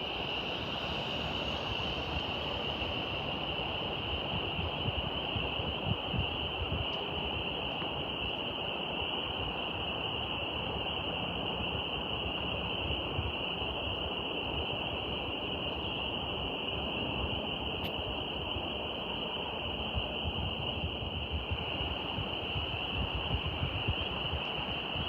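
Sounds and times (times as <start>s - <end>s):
faint click: 17.8s - 18.0s.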